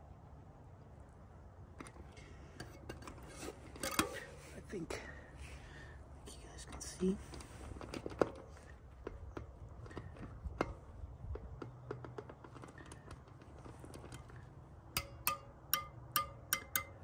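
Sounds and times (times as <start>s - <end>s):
wheel spokes being tapped: 7.3s - 17.0s.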